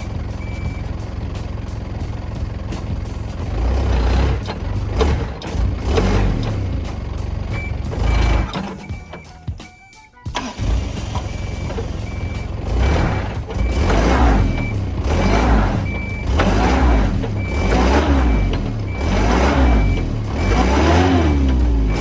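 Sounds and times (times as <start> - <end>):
reversing alarm beeping: 0.0 - 1.0, 7.5 - 10.5, 11.2 - 22.0
vehicle engine revving: 0.0 - 9.3, 10.4 - 22.0.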